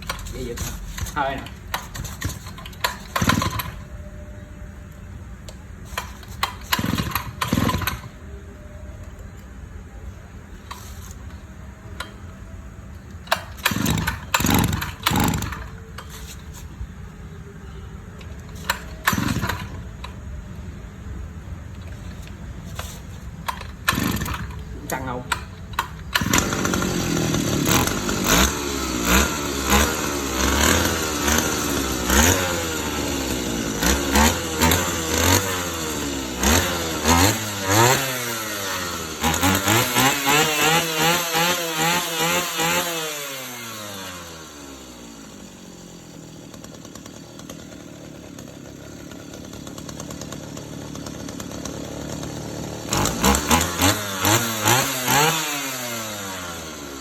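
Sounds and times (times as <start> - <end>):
small two-stroke engine revving: 0.2 - 3.9, 5.9 - 8.2, 13.3 - 16.4, 18.3 - 20.2, 22.7 - 57.0.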